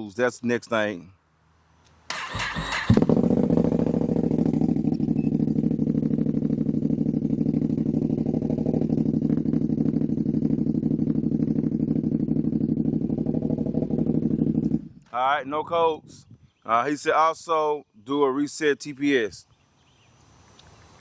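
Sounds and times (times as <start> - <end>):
engine idling: 2.1 - 14.9.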